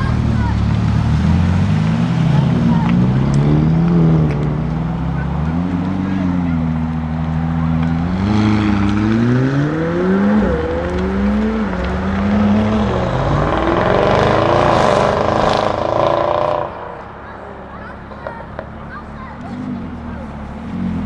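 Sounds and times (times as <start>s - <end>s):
car engine accelerating hard: 0.0s - 21.0s.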